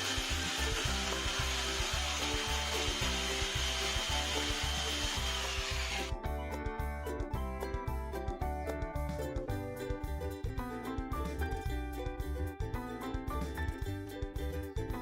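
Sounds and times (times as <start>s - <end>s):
power tool whining on wood: 0.0s - 6.2s
background music with beat: 0.0s - 15.0s.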